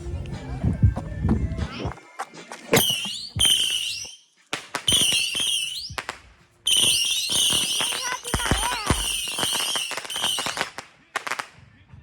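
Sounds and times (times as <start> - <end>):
shrill firework whistles: 2.7 - 11.5
firework bangs: 2.7 - 11.6.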